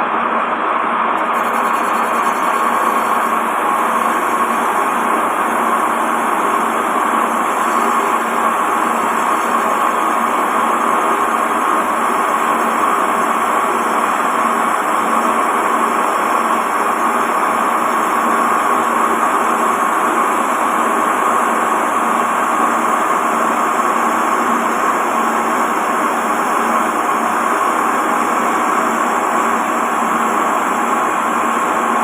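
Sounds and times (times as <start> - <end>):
machine tool cutting: 1.2 - 11.7.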